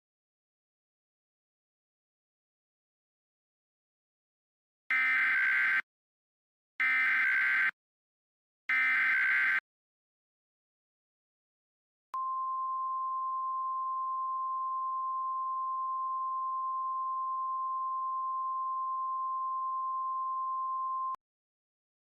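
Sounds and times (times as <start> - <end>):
steady warning alarm tone: 4.9 - 5.8, 6.8 - 7.7, 8.7 - 9.6.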